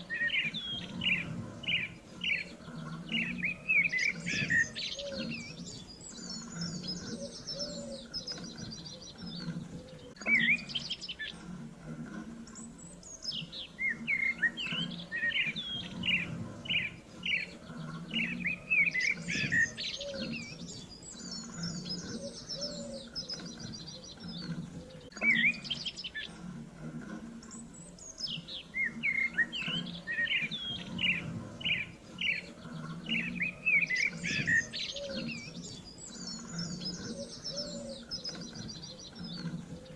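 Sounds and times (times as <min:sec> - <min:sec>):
songbirds chirping: 0:00.0 - 0:39.9.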